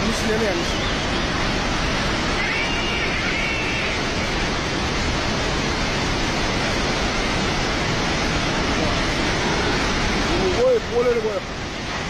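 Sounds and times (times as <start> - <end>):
floodwater rushing: 0.0 - 12.0.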